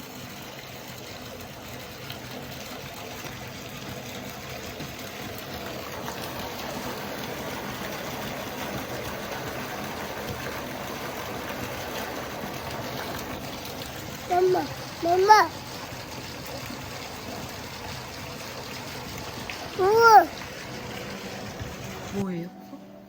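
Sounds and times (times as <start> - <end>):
flowing water rushing: 0.0 - 23.0.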